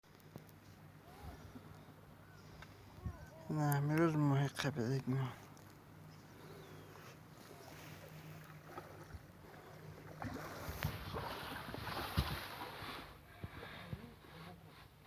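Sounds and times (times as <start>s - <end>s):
ship engine hum: 0.2s - 12.0s.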